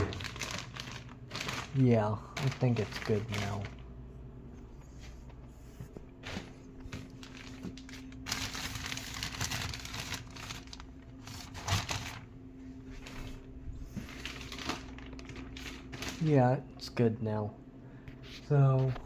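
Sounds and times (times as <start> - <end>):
plastic sheet crinkling: 0.0 - 3.9, 6.1 - 16.6.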